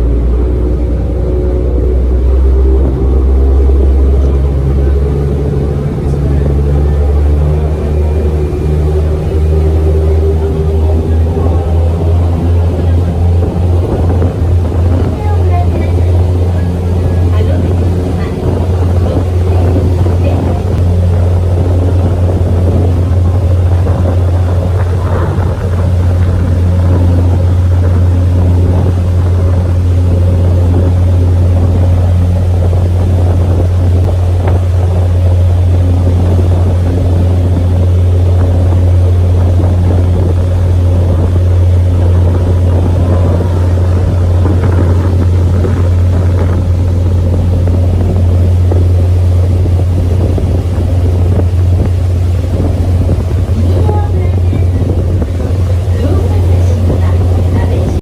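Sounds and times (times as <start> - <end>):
boat engine humming: 0.0 - 58.0
water rushing along hull: 0.0 - 58.0.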